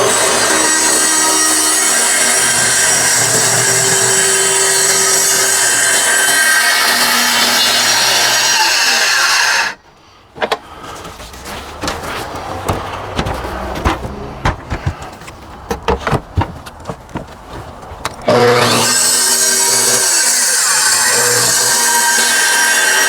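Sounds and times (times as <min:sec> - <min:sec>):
circular saw cutting: 0:00.0 - 0:09.8, 0:18.2 - 0:23.0.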